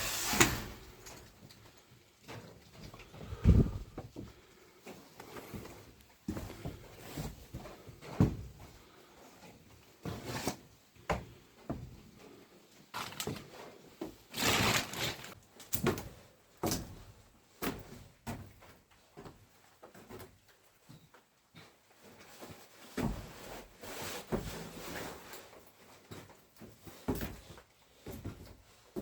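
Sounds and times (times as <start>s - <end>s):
scraping rustle: 14.3s - 15.4s.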